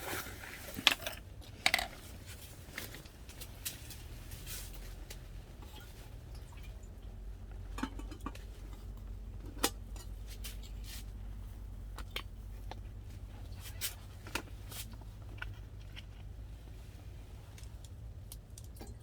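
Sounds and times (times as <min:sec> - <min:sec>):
small hard items clicking: 0:00.8 - 0:02.0.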